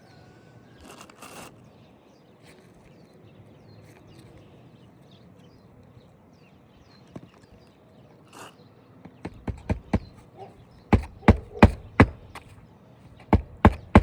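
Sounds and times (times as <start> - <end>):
roof shingle rustling: 7.1 - 14.0
sharp tap on shingle: 9.0 - 12.6, 13.2 - 14.0.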